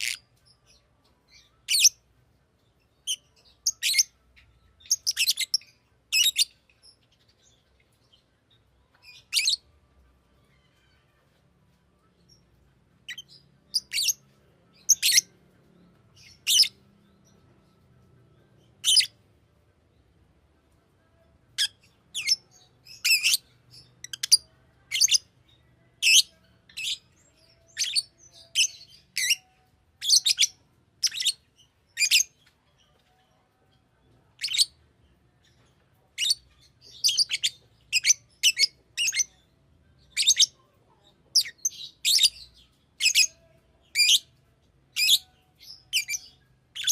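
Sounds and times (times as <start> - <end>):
bird chirping: 0.0 - 19.3, 21.0 - 46.9.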